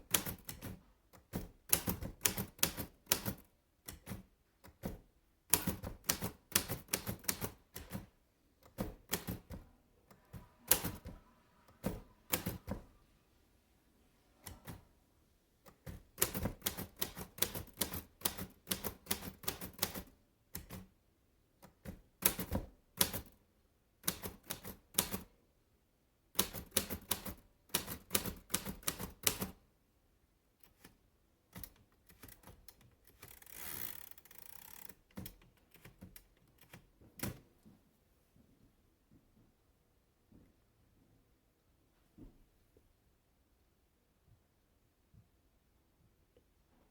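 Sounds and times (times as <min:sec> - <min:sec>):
typewriter key strikes: 0:00.0 - 0:08.1, 0:08.7 - 0:09.6, 0:15.8 - 0:20.9, 0:26.4 - 0:29.5.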